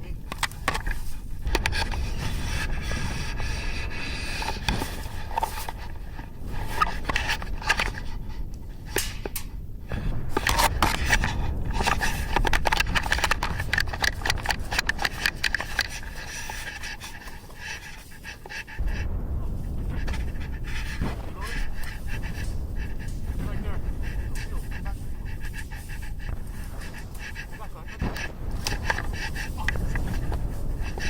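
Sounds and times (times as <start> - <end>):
rustling and scraping: 0.0 - 31.0
sharp clicks: 0.0 - 31.0
person panting: 9.9 - 31.0.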